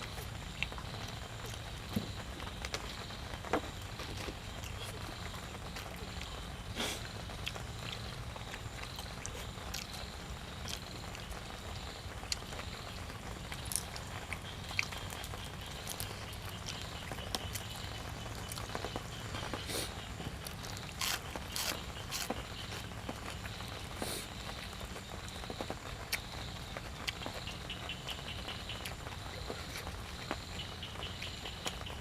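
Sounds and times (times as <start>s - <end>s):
chewing and mouth smacks: 7.4s - 11.3s, 13.5s - 17.8s, 18.4s - 23.6s.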